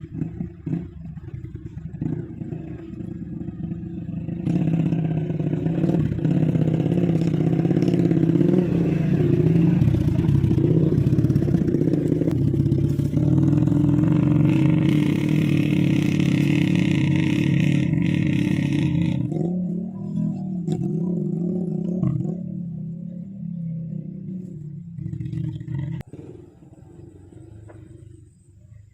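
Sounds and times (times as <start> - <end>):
small petrol engine running: 0.0 - 20.1.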